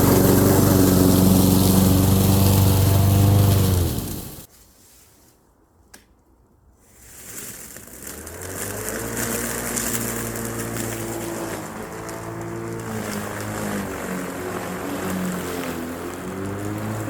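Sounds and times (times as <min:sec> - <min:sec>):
lawn mower running: 0:00.0 - 0:04.5, 0:07.2 - 0:17.0.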